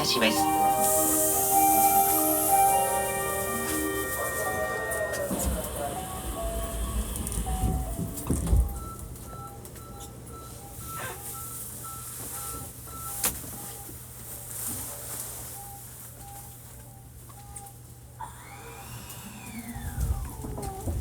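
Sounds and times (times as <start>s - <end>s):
two-note chime: 0.0s - 8.2s
departure melody: 0.0s - 9.0s.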